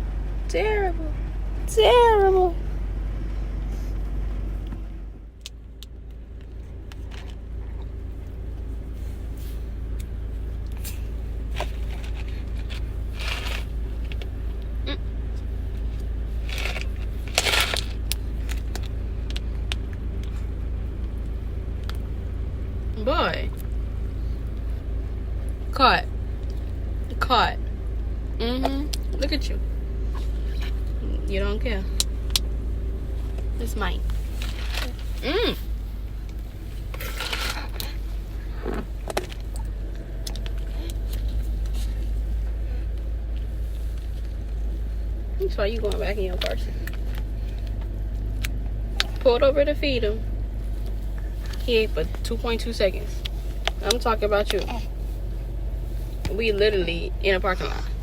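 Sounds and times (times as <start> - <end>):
car engine humming: 0.0 - 58.0
rustles: 6.3 - 22.9, 31.9 - 58.0.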